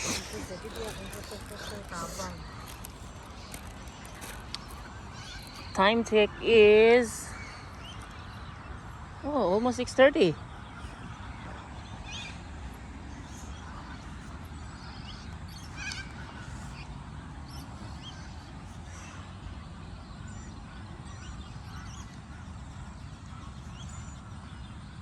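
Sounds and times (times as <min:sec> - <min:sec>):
bird calls sliding down: 0:00.0 - 0:05.7.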